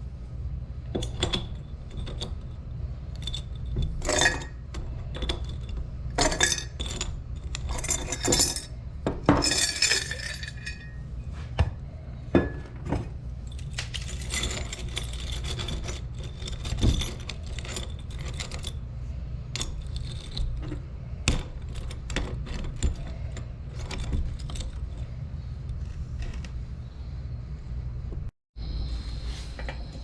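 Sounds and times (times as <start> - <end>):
steady low hum: 0.0 - 30.0
metal scrap clinking and jangling: 9.4 - 11.0, 13.5 - 18.8.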